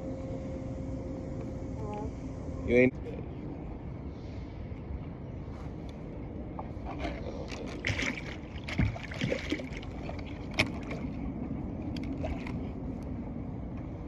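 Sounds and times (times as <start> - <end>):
water sloshing: 6.5 - 13.5.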